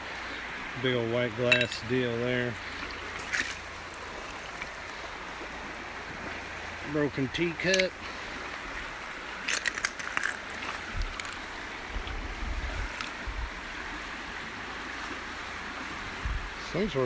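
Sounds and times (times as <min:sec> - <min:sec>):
creek water rushing: 0:00.0 - 0:17.0.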